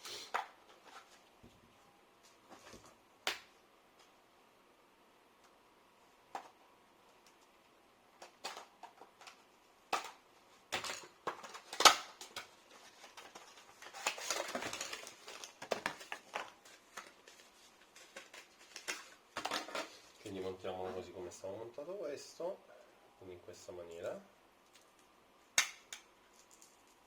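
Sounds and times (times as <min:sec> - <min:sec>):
rustling and scraping: 0:00.0 - 0:03.0, 0:10.4 - 0:21.1, 0:26.2 - 0:27.0.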